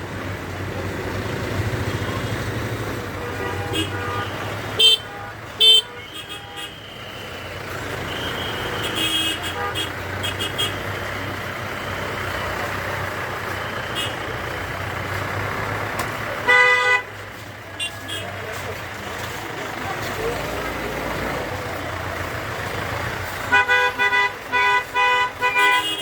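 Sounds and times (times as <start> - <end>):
traffic engine and road noise: 0.0 - 26.0
vehicle horns honking: 3.0 - 11.3, 13.6 - 14.6, 16.4 - 18.7, 23.3 - 26.0.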